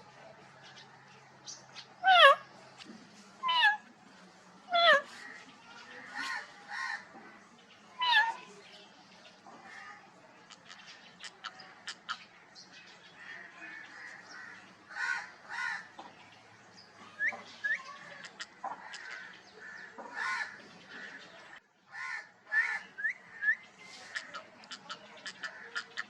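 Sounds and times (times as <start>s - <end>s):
parrot squawking: 2.0s - 2.5s, 3.4s - 3.8s, 4.7s - 5.1s, 8.0s - 8.4s.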